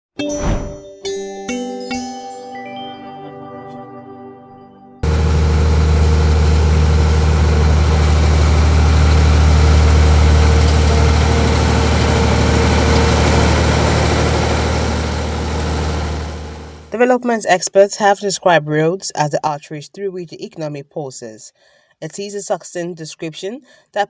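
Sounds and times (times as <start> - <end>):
heavy engine idling: 5.0 - 16.9.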